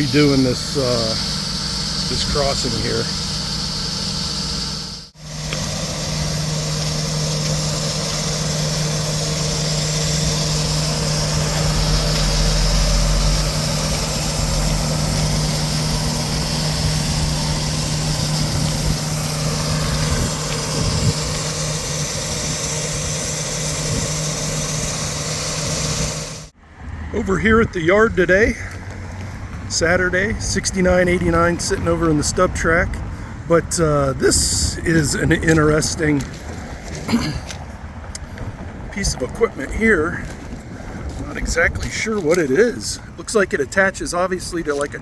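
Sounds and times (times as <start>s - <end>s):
heavy machinery engine humming: 0.0s - 45.0s.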